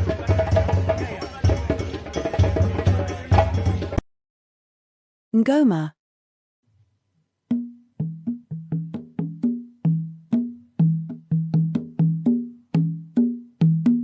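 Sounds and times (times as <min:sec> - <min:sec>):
hand drum rhythm: 0:00.0 - 0:04.0, 0:07.5 - 0:14.0.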